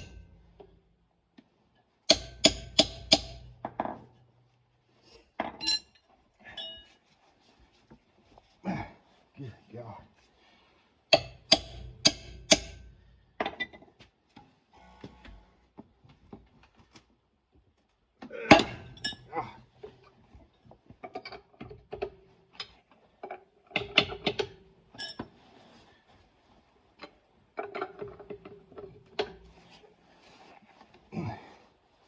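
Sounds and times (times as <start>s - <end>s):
lug wrench clinking on lug nuts: 18.5s - 19.3s, 21.0s - 25.3s.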